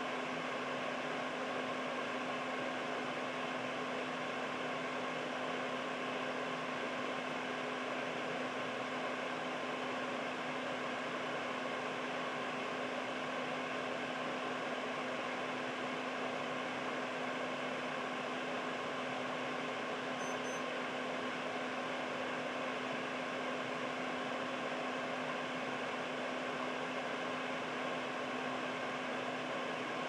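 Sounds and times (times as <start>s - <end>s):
high-pitched beeps: 20.2s - 20.6s.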